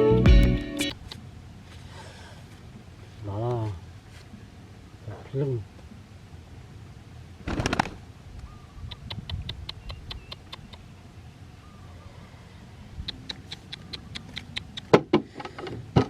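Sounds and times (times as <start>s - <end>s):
small bird chirping: 8.4s - 11.0s, 12.9s - 14.9s.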